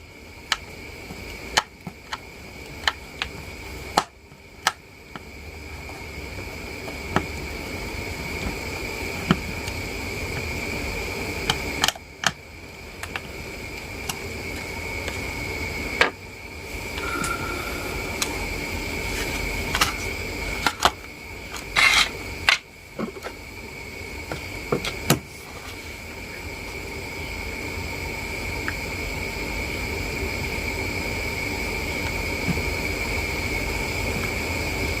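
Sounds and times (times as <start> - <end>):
faint high whine: 0.0 - 35.0.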